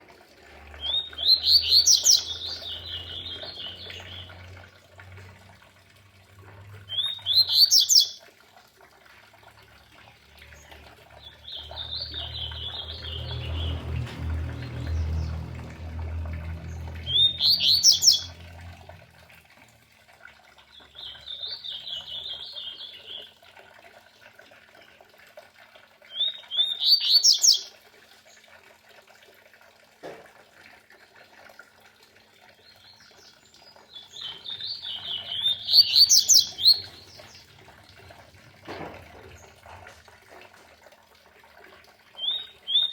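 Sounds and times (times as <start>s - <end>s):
water trickling: 0.0s - 42.9s
bird singing high rising notes: 0.8s - 4.5s, 6.8s - 8.2s, 11.2s - 19.0s, 26.6s - 27.7s, 34.0s - 37.6s.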